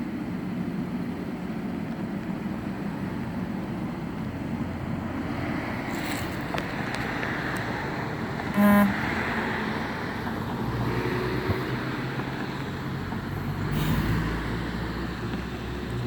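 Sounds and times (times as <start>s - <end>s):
low engine hum: 0.0s - 16.0s
road traffic noise: 0.0s - 16.0s
short car horn beep: 8.5s - 9.0s.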